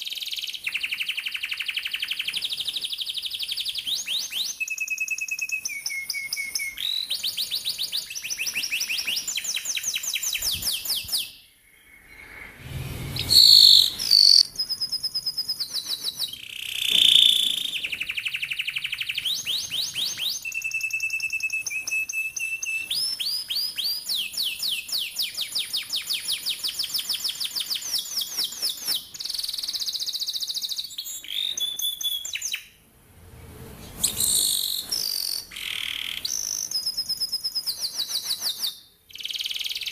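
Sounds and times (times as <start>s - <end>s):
canary singing: 0.1s - 32.8s, 33.9s - 39.9s
short loud bird call: 11.7s - 14.6s.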